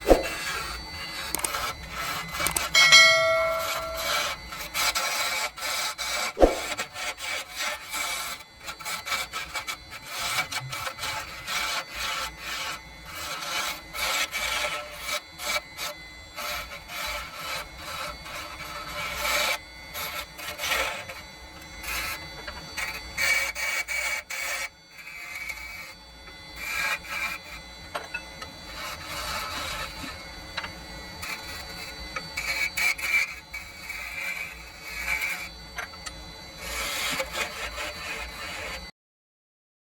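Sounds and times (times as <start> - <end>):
rasping and scraping on wood: 0.0 - 38.9
short metallic ring: 2.6 - 4.4.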